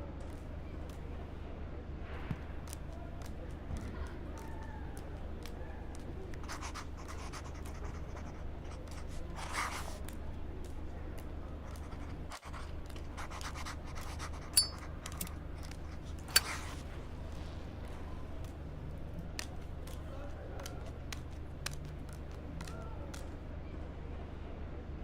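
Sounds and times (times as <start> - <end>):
low room hum: 0.0 - 25.0
cards scratching and rustling: 2.7 - 10.2, 11.6 - 17.1.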